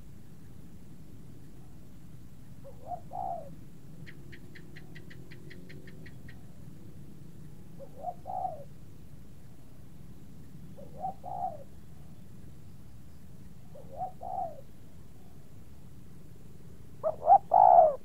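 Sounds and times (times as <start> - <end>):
bird calling: 2.6 - 6.5, 7.8 - 8.7, 10.8 - 11.8, 13.7 - 14.7, 17.0 - 18.0
steady low hum: 6.1 - 18.0.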